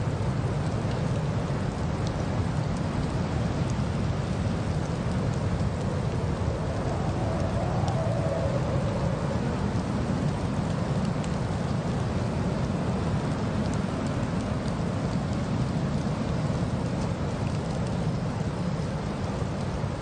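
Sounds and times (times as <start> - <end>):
wind: 0.0 - 20.0
faint ticks: 16.8 - 19.5.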